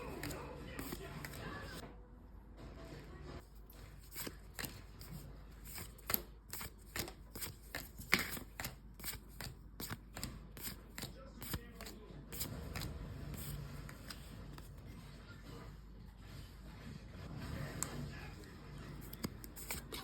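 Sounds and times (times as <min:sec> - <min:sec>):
cards clicking and sliding: 0:00.0 - 0:01.8, 0:03.7 - 0:15.0, 0:17.6 - 0:20.0.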